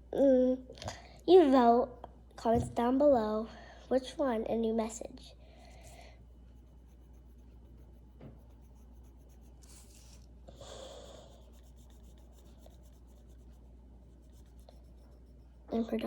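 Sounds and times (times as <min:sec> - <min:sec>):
steady low hum: 0:01.9 - 0:16.0
colouring tool scratching paper: 0:06.4 - 0:10.2, 0:10.9 - 0:16.0.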